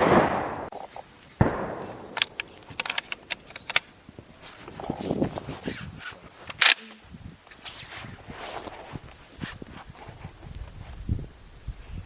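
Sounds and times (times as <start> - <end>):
rifle shots with echo: 0.0 - 0.7, 1.4 - 3.8
sharp clicks and knocks: 2.1 - 3.9.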